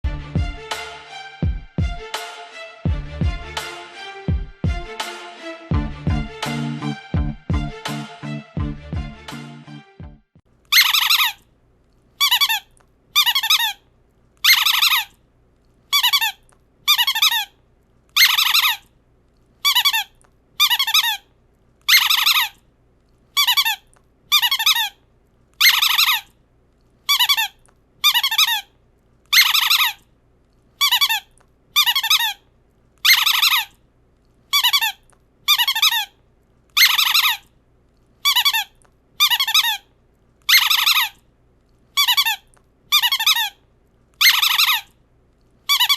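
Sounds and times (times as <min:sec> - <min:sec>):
shrill warbling squeak: 0:10.7 - 0:11.4, 0:12.2 - 0:13.8, 0:14.4 - 0:15.2, 0:15.9 - 0:17.6, 0:18.2 - 0:18.8, 0:19.6 - 0:21.2, 0:21.9 - 0:22.6, 0:23.4 - 0:25.0, 0:25.6 - 0:26.3, 0:27.1 - 0:28.7, 0:29.3 - 0:30.0, 0:30.8 - 0:32.4, 0:33.0 - 0:33.8, 0:34.5 - 0:36.1, 0:36.8 - 0:37.4, 0:38.2 - 0:39.9, 0:40.5 - 0:41.2, 0:42.0 - 0:43.6, 0:44.2 - 0:44.9, 0:45.7 - 0:45.9.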